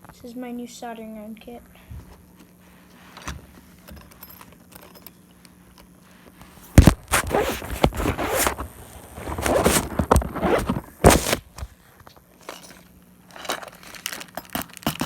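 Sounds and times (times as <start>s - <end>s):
rustling and scraping: 6.0s - 15.0s.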